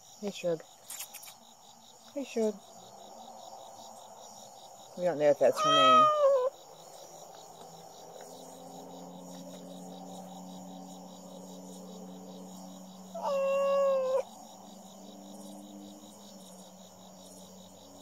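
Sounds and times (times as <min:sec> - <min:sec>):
crickets chirping: 0:00.0 - 0:18.0
cat meowing loudly: 0:05.5 - 0:06.5, 0:13.1 - 0:14.3.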